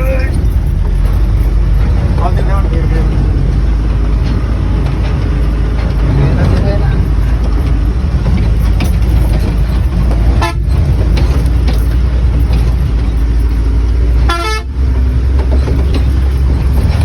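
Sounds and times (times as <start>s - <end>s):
vehicle engine rumbling: 0.0s - 17.0s
horn tooting: 10.4s - 10.8s, 14.2s - 14.8s.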